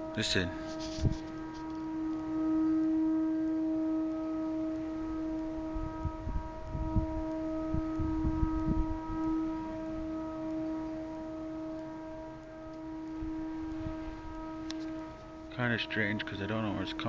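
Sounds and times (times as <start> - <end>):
pitched buzzing drone: 0.0 - 17.0.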